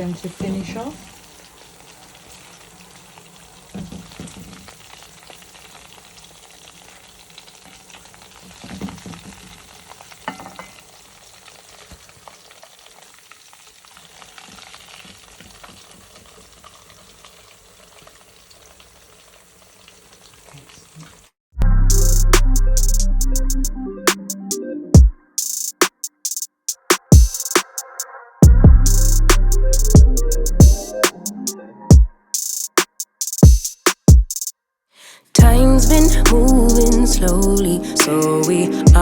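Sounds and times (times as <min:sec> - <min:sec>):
chicken sizzling in hot oil: 0:00.0 - 0:21.3.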